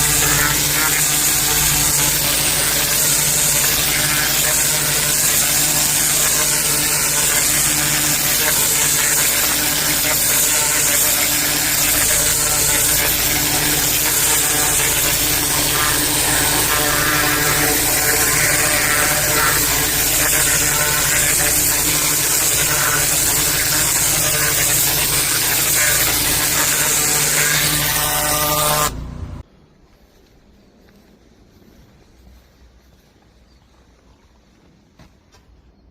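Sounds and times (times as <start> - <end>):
water jet hissing on paving: 0.0 - 28.9
pressure washer motor humming: 0.0 - 29.4.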